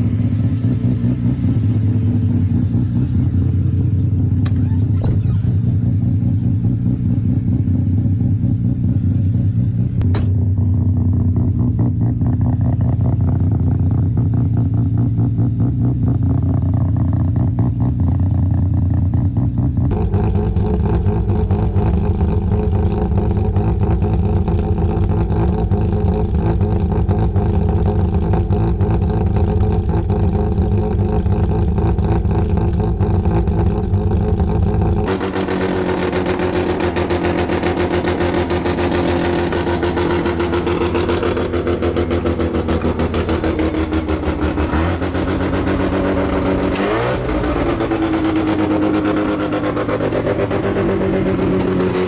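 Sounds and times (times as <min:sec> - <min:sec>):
rotary engine running choppy: 0:19.9 - 0:52.0.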